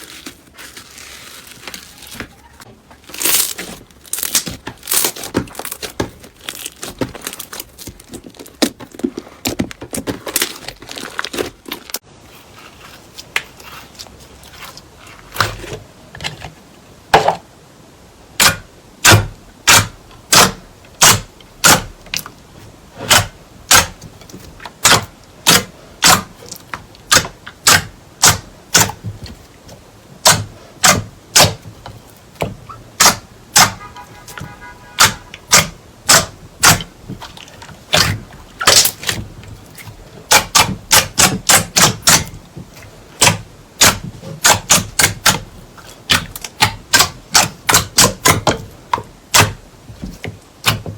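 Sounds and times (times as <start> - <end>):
slime crackling: 0.0 - 12.0.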